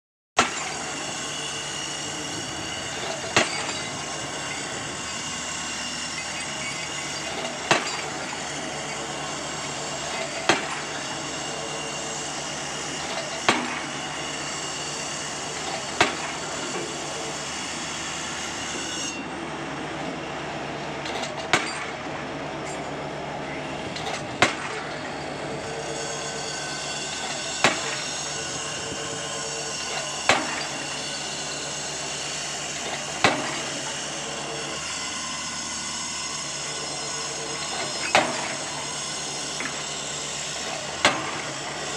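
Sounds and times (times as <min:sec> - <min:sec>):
heavy machinery drone: 0:00.4 - 0:41.9
pile hammer striking: 0:10.4 - 0:10.9, 0:13.4 - 0:13.9, 0:21.4 - 0:21.9, 0:24.1 - 0:24.9, 0:27.3 - 0:28.1, 0:30.0 - 0:30.7, 0:33.0 - 0:33.8.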